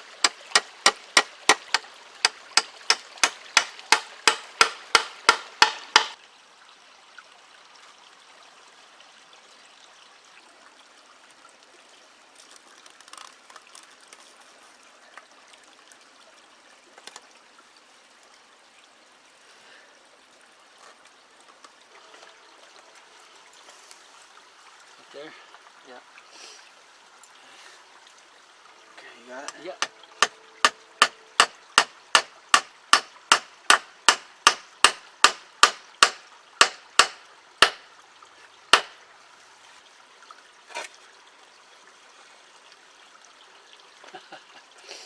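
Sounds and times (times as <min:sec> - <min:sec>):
hammer driving nails into wood: 0:00.2 - 0:06.2, 0:30.2 - 0:37.8, 0:38.8 - 0:39.0.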